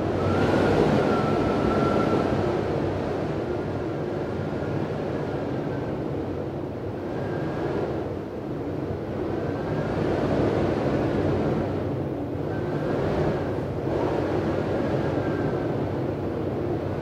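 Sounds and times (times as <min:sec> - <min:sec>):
faint high wind whistle: 0:00.0 - 0:08.2, 0:12.4 - 0:17.0
wind rushing through door: 0:00.0 - 0:17.0.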